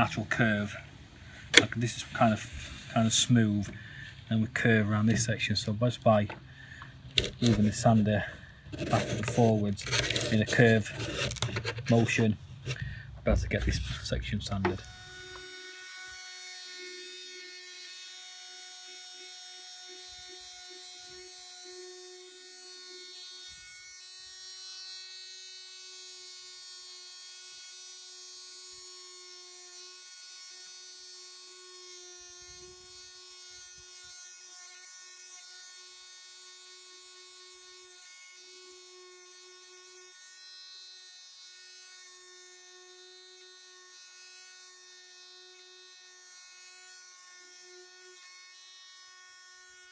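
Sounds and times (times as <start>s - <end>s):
sandpaper hissing on wood: 1.8s - 3.6s, 7.2s - 12.8s
orbital sander motor whine: 13.6s - 22.6s.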